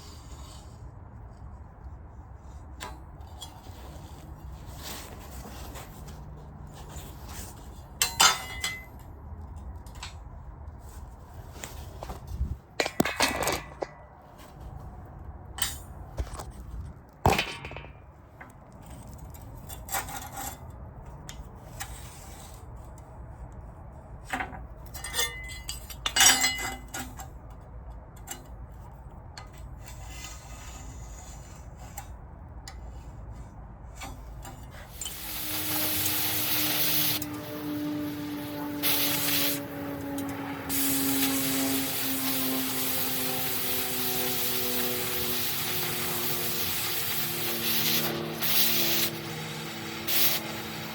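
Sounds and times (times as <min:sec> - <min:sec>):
loud steady hiss: 0:35.0 - 0:50.9.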